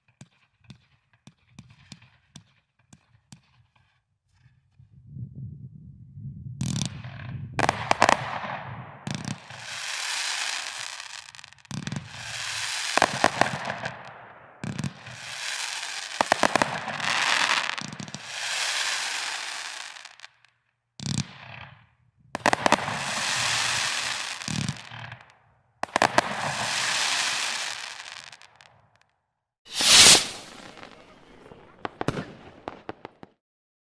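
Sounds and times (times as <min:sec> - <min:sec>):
firework shots: 0:06.6 - 0:21.8, 0:22.4 - 0:28.8, 0:29.7 - 0:33.4
rushing hiss of firework bursts: 0:09.1 - 0:14.1, 0:14.8 - 0:20.3, 0:22.4 - 0:24.9, 0:25.8 - 0:28.4, 0:29.7 - 0:31.1.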